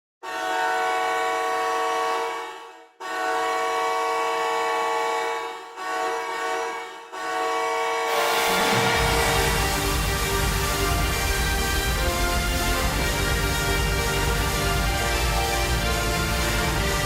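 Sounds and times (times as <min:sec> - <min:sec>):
hockey goal horn blaring: 0:00.2 - 0:17.0
goal song music: 0:08.1 - 0:17.0.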